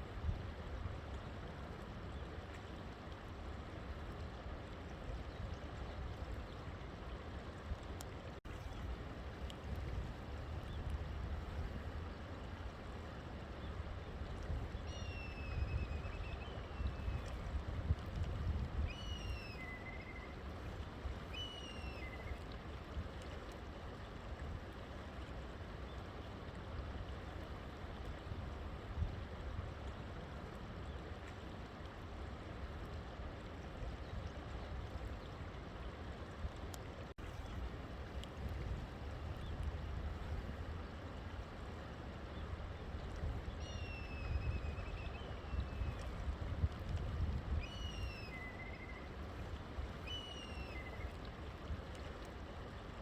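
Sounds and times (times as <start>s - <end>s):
bird whistled calls: 14.9s - 17.1s, 18.9s - 20.3s, 21.4s - 22.3s, 43.6s - 45.8s, 47.6s - 49.1s, 50.0s - 51.0s.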